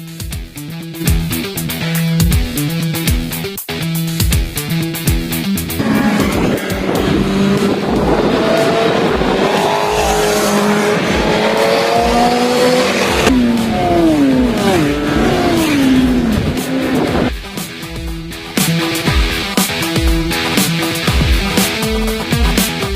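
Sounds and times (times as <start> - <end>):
racing motorcycle engines revving: 5.1 - 22.9
motorcycle passing and slowing: 5.6 - 17.3.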